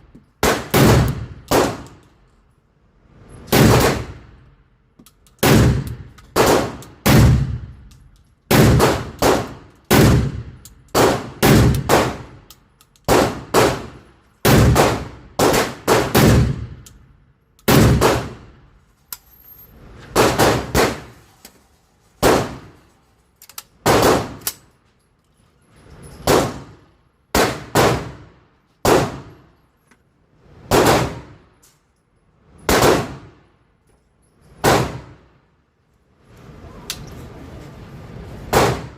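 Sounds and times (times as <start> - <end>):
shotgun shots: 0.4 - 1.9, 3.5 - 4.2, 5.4 - 7.7, 8.5 - 12.4, 13.1 - 16.8, 17.7 - 18.6, 20.1 - 21.1, 22.2 - 22.7, 23.8 - 24.4, 26.3 - 29.3, 30.7 - 31.4, 32.7 - 33.3, 34.6 - 35.2, 38.5 - 38.9.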